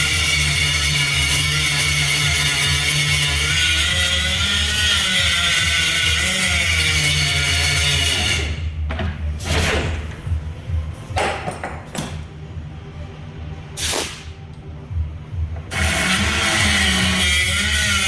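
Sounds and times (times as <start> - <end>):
power tool running on metal: 0.0 - 8.6, 15.7 - 18.0.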